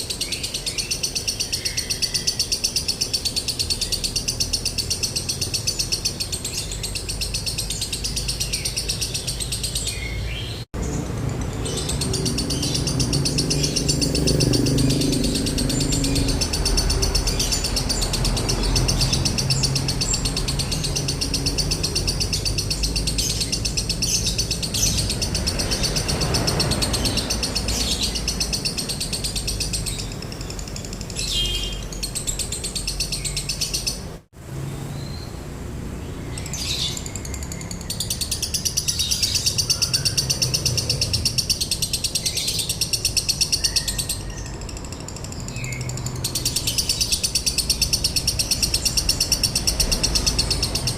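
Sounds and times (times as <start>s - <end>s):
lovebird rattling trill: 11.3s - 34.1s, 36.5s - 50.9s.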